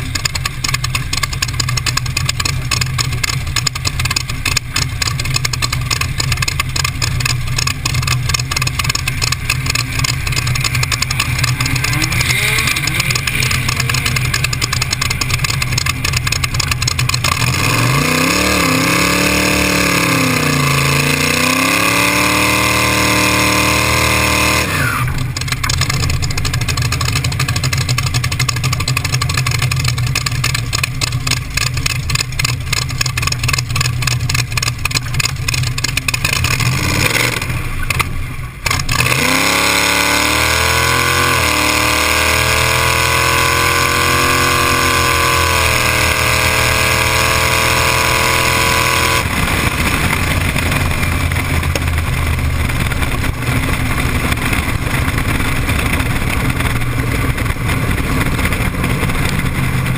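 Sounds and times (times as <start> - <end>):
hot rod engine idling and revving: 0.0 - 59.9
wind rush: 49.1 - 59.9.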